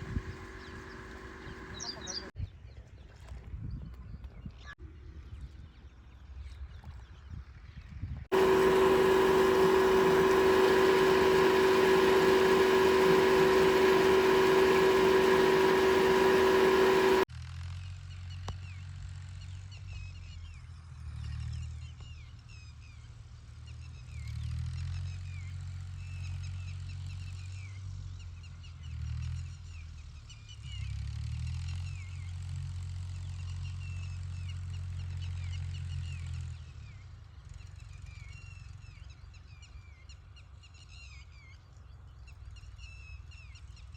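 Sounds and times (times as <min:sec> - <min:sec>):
birds chirping: 0:00.0 - 0:02.3
engine low rumble: 0:00.0 - 0:02.3, 0:08.3 - 0:17.3
loud steady drone: 0:00.0 - 0:02.3, 0:08.3 - 0:17.2.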